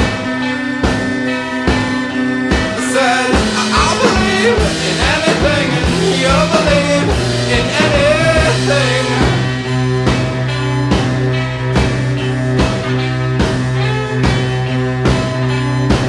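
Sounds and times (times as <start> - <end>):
rock song: 0.0 - 16.0.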